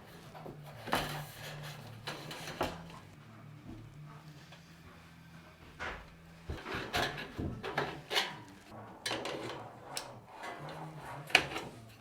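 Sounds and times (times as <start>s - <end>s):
steel sheet scraping and clattering: 6.6s - 12.0s.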